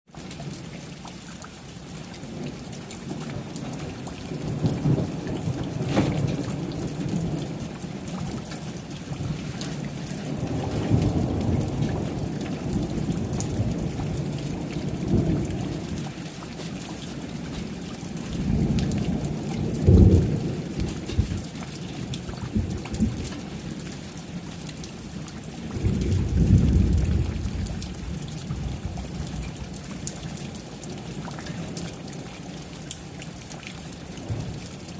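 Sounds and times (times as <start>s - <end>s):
steady rainfall: 0.1s - 34.9s
thunder rumbling: 2.3s - 24.0s, 25.6s - 30.1s.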